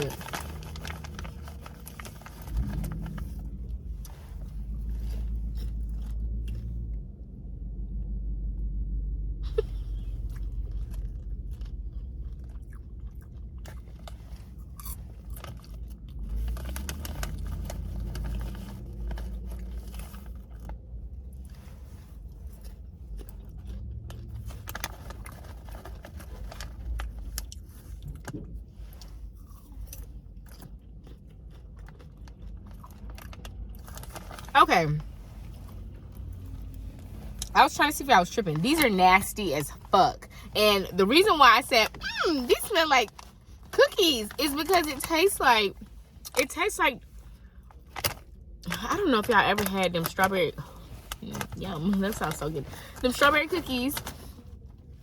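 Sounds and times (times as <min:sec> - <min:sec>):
person crunching popcorn: 0:00.0 - 0:06.7, 0:10.1 - 0:28.4, 0:29.0 - 0:34.5
low steady rumble: 0:00.0 - 0:55.0.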